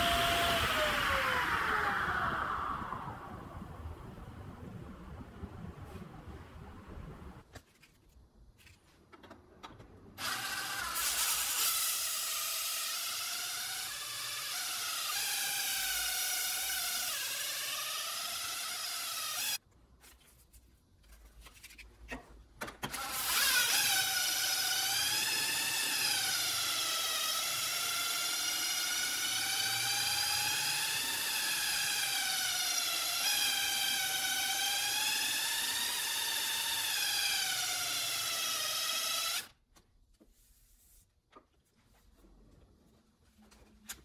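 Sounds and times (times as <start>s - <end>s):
power tool motor whining: 22.9s - 39.5s.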